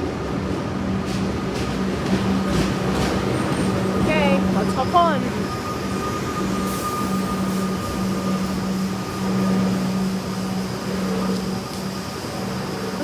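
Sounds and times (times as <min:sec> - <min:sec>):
electric train hum: 0:00.0 - 0:13.0
low drone: 0:04.2 - 0:13.0.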